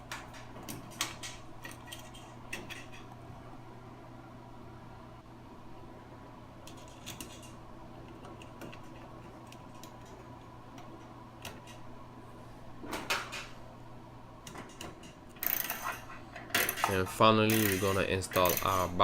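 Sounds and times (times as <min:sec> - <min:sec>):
steady low hum: 0:00.0 - 0:19.0
screwdriver and metal parts clinking: 0:14.8 - 0:18.9.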